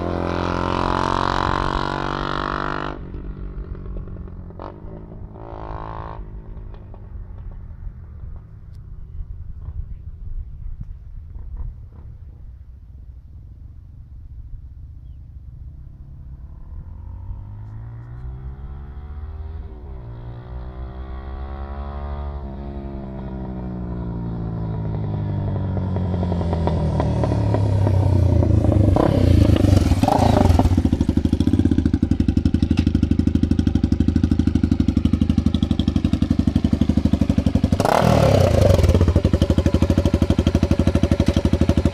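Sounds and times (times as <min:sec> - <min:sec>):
motorcycle engine revving: 0:00.0 - 0:08.5, 0:16.2 - 0:41.9.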